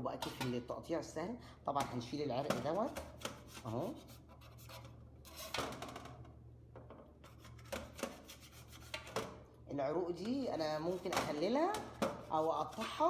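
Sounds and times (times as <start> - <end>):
knife scraping cabbage leaves: 7.3 - 9.2.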